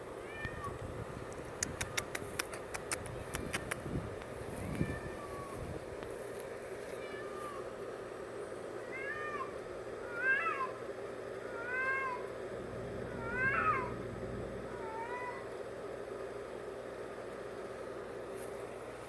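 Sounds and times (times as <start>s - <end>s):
cat meowing: 6.9s - 7.7s, 8.8s - 10.8s, 11.5s - 12.3s, 13.1s - 14.0s, 14.7s - 15.5s.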